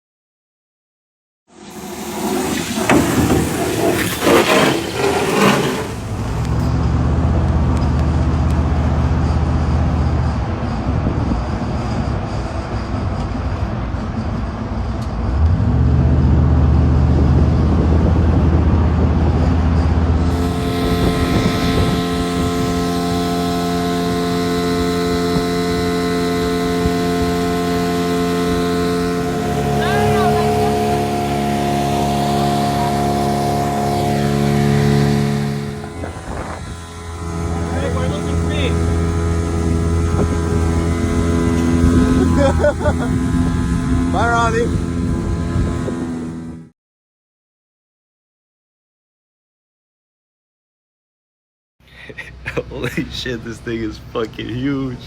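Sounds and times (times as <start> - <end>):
outboard motor running: 1.6 - 11.2, 15.4 - 46.7.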